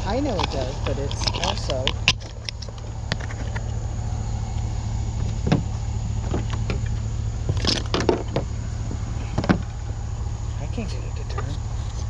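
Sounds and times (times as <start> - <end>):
vehicle engine idling: 0.0 - 12.0
scrap being handled clicks: 0.3 - 3.7.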